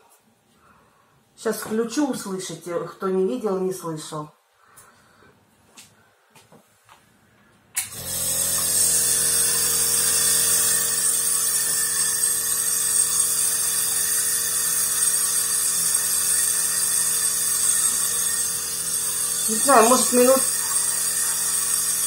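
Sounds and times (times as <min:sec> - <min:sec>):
nebulizer buzzing hum and hiss: 0:07.8 - 0:22.0.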